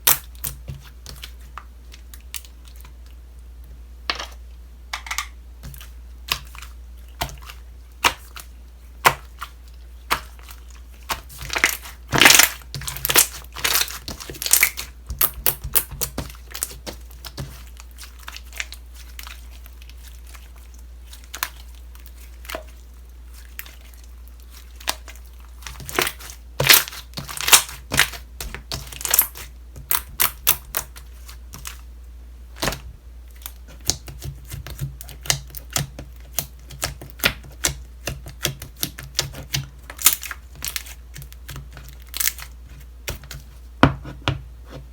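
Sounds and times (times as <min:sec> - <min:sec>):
slime crackling and popping: 0:10.1 - 0:22.7, 0:23.4 - 0:31.8, 0:33.4 - 0:42.5.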